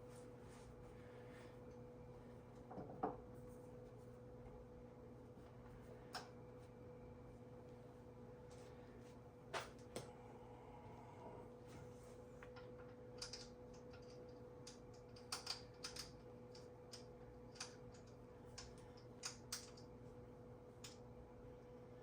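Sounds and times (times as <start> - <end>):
faint steady hum: 0.0 - 22.0
light clicks of pieces fitted: 12.4 - 20.0.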